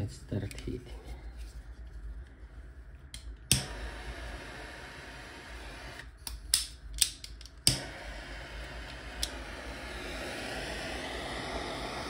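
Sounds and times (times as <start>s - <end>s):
gas torch hissing: 3.5s - 6.3s, 7.6s - 12.0s.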